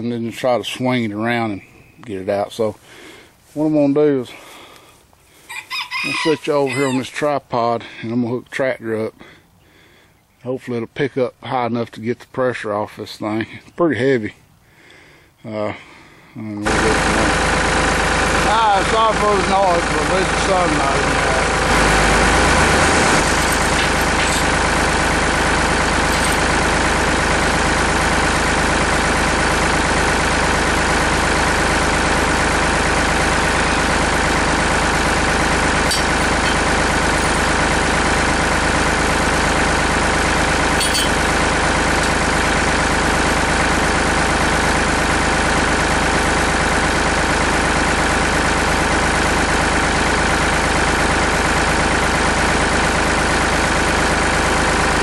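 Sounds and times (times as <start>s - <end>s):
tractor engine running: 16.6s - 55.0s.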